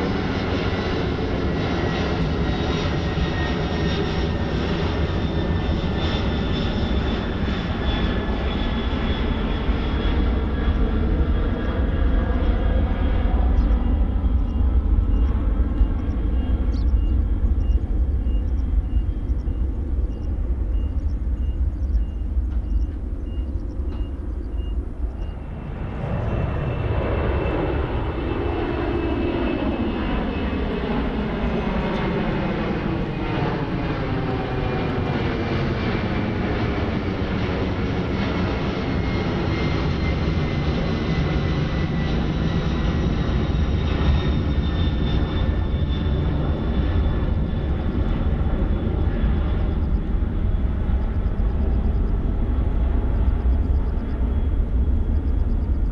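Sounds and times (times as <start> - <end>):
high engine whine: 0.0 - 55.9
jet engines roaring: 0.0 - 55.9.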